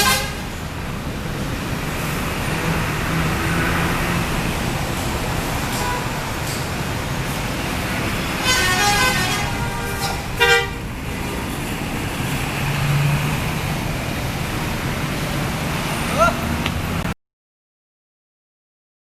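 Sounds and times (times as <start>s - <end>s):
bus multi-tone horn: 0.0s - 0.6s, 5.6s - 6.4s, 8.2s - 10.9s
bus engine: 0.0s - 17.2s
traffic noise: 0.0s - 17.2s.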